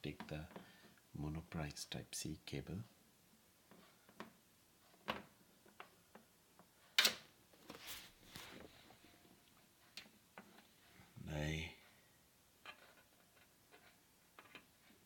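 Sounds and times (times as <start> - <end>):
cable rustle: 6.8 - 11.1.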